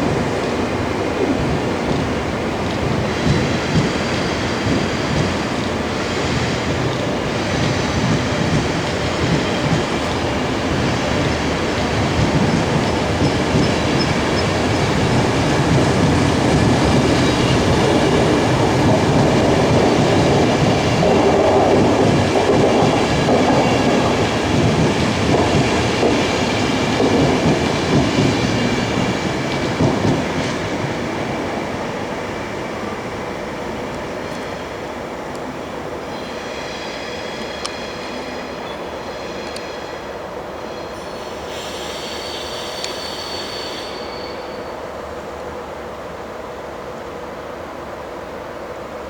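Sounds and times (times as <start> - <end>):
train wheels clattering on track: 0.0 - 40.0, 40.7 - 44.8
high-pitched locomotive tones: 36.0 - 45.0.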